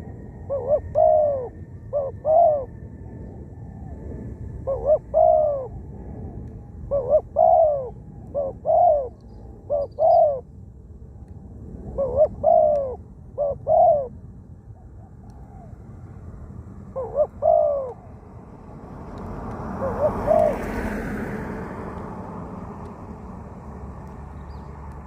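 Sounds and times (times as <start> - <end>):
doves cooing: 0.0 - 4.0, 4.6 - 10.5, 11.9 - 14.2, 16.8 - 18.3, 19.4 - 21.3.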